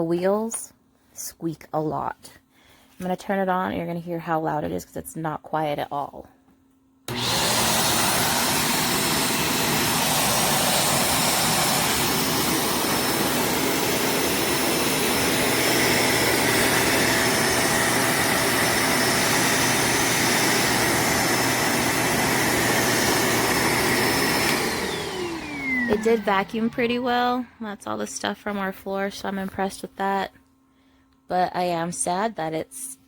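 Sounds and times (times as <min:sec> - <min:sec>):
vacuum cleaner running: 0:07.1 - 0:30.2.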